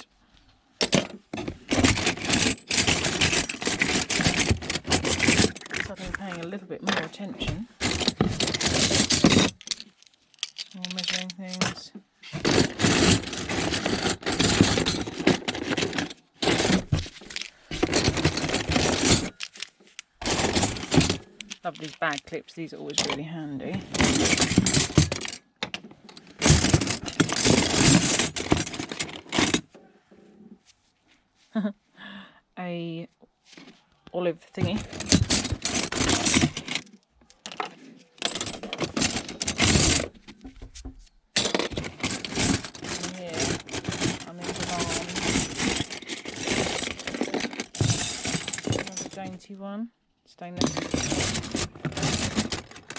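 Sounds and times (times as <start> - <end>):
metal utensils clattering: 0.8 - 7.2, 7.8 - 11.8, 12.4 - 22.0, 23.8 - 25.4, 26.1 - 29.7, 34.6 - 36.8, 38.2 - 40.2, 41.4 - 49.4, 50.6 - 52.9.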